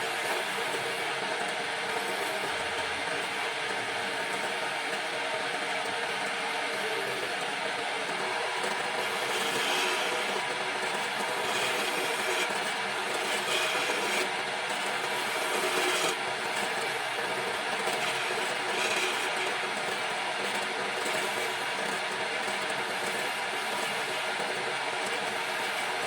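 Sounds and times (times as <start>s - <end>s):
wood lathe scraping hiss: 8.2s - 20.2s.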